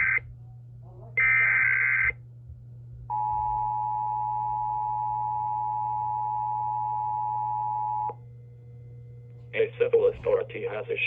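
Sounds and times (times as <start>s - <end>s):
digital data screech: 1.2s - 2.2s.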